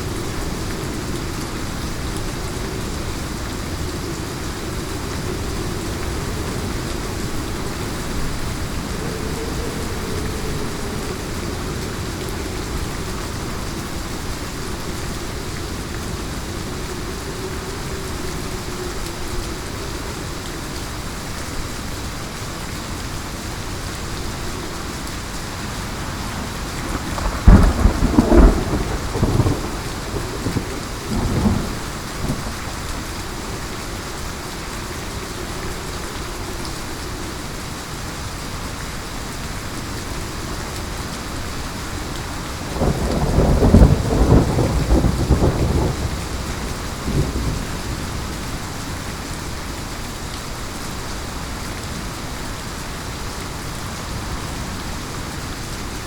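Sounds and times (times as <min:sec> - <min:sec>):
heavy rain: 0:00.0 - 0:56.0
thunder rumbling: 0:01.8 - 0:19.8, 0:23.7 - 0:35.5, 0:41.9 - 0:48.6.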